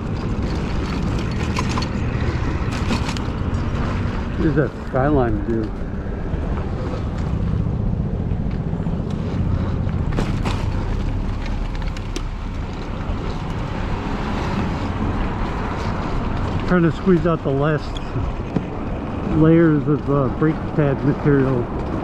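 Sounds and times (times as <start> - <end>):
bike road noise: 0.0 - 22.0
wind over microphone: 0.0 - 22.0.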